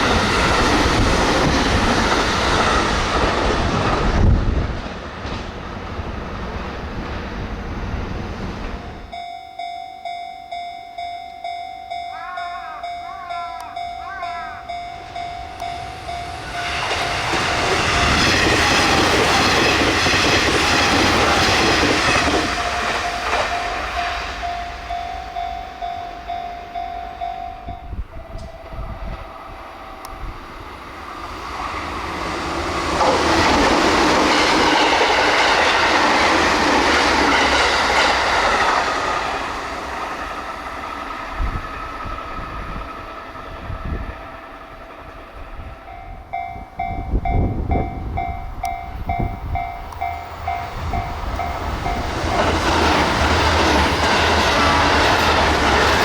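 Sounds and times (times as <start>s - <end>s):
diesel train passing: 0.0s - 56.0s
level crossing alarm two-tone ringing: 8.8s - 30.3s, 45.9s - 56.0s.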